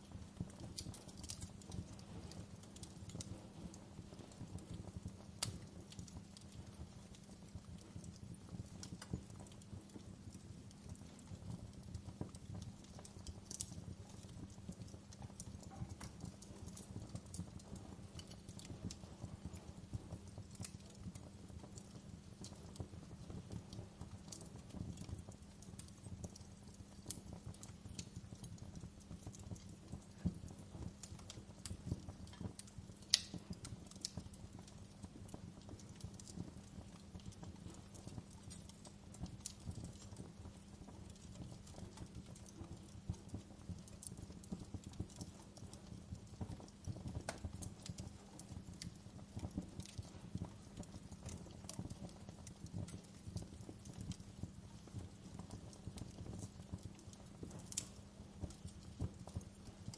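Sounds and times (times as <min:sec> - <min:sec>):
fire pops: 0:00.0 - 0:59.9
wood fire crackling: 0:00.0 - 0:59.9.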